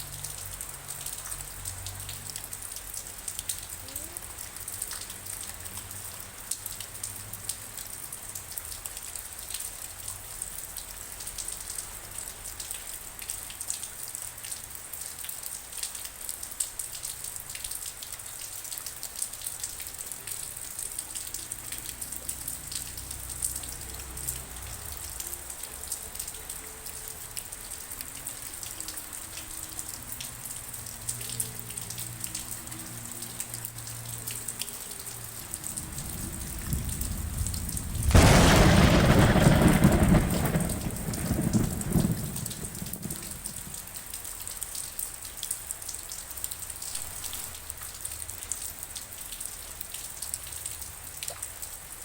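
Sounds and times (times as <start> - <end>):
raindrops ticking on a surface: 0.0 - 52.0
rain hissing: 18.2 - 44.7
low rumble: 35.2 - 43.9.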